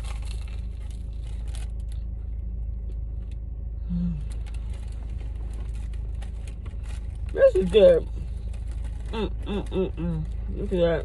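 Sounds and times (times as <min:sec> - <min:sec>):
car engine idling: 0:00.0 - 0:11.0
low hum: 0:00.0 - 0:11.0.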